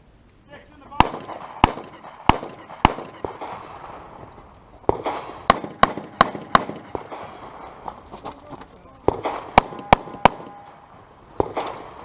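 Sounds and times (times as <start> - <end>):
pistol shots: 1.0 - 4.0, 4.9 - 7.4, 9.0 - 12.0.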